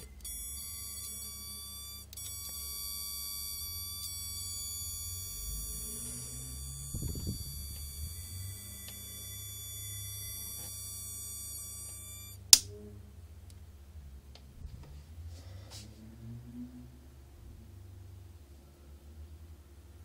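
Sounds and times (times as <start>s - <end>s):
high-pitched electrical whine: 0.0s - 12.9s
low electrical hum: 0.0s - 20.0s.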